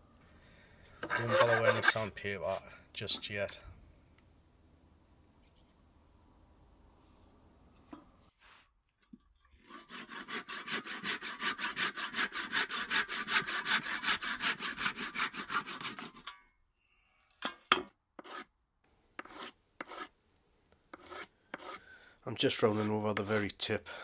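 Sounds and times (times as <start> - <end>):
rasp scraping wood: 1.0 - 2.1, 9.6 - 16.3, 18.2 - 18.5, 19.2 - 20.1, 20.9 - 21.8, 22.4 - 23.5.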